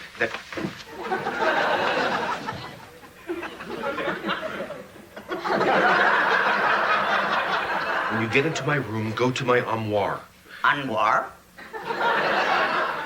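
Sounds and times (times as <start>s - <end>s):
audience laughing: 0.9s - 8.8s, 11.6s - 13.0s.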